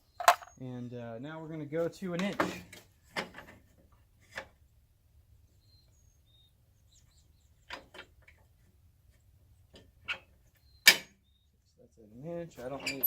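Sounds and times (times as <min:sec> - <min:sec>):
faint bird chirps: 0:05.4 - 0:07.7, 0:10.4 - 0:11.9.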